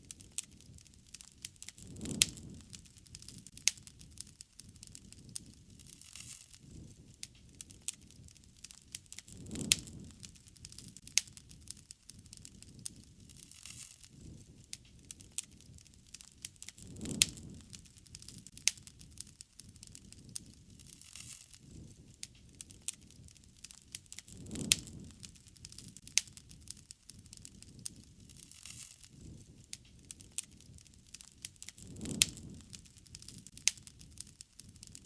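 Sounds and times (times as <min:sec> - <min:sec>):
campfire crackling and popping: 0:00.0 - 0:35.0
rushing of flames: 0:00.0 - 0:35.0.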